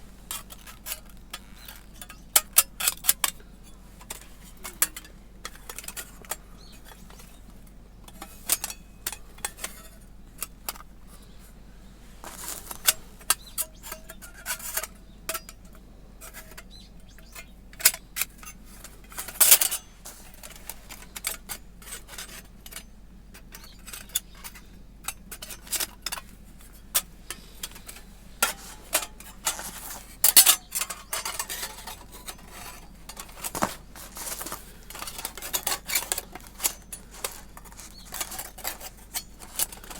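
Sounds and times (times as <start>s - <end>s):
metal plates clinking: 17.3s - 39.9s.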